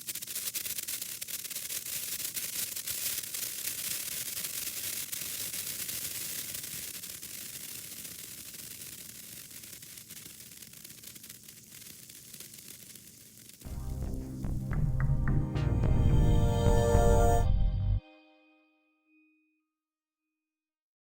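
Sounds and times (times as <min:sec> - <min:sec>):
sparkler crackling: 0:00.0 - 0:14.7.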